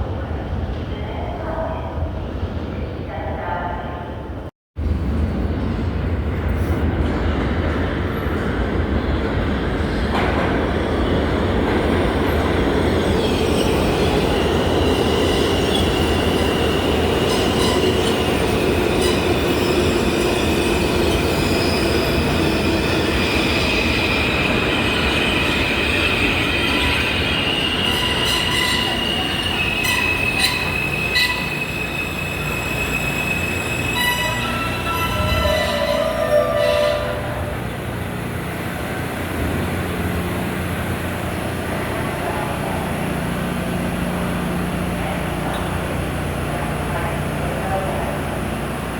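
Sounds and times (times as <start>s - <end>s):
subway train rumbling past: 0.0s - 48.9s
high-pitched wheel squeal: 17.3s - 37.6s.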